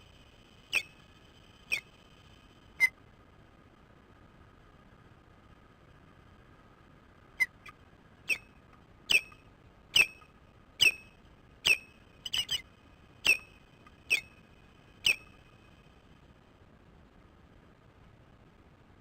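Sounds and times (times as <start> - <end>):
osprey chirps: 0.6 - 2.9, 7.4 - 15.7.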